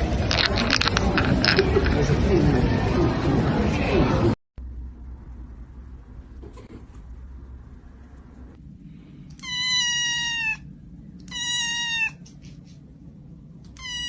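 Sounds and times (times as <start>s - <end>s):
cat meowing: 9.4s - 12.3s, 13.7s - 14.0s.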